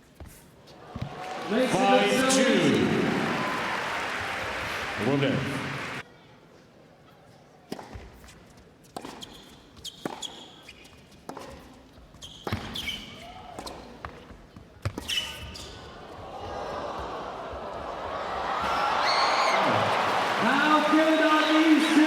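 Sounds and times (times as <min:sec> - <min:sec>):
shoes squeaking on hard court: 0:07.7 - 0:16.0.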